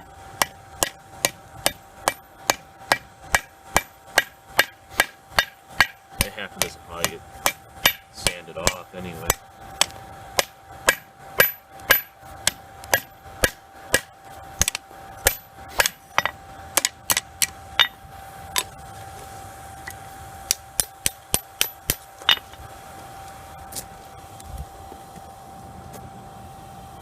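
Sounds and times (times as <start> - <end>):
hammer striking hot metal: 0.0 - 18.0, 20.5 - 22.6
faint steady hum: 0.0 - 27.0.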